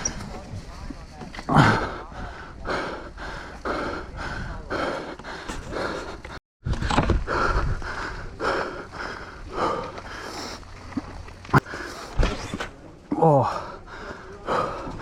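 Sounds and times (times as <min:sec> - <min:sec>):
person panting: 0:01.5 - 0:06.4, 0:07.0 - 0:10.6, 0:13.4 - 0:15.0
wind rumble on microphone: 0:06.6 - 0:08.4.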